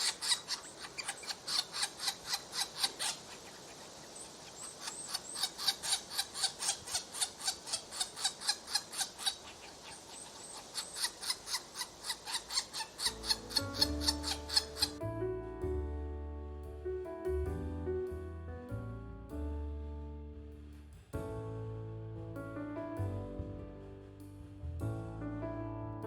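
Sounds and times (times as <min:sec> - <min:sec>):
woodpecker calling: 0:00.0 - 0:15.0.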